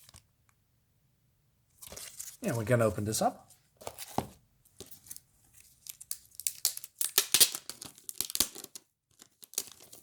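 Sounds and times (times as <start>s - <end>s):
plastic wrapping ripping and crinkling: 5.8s - 10.0s.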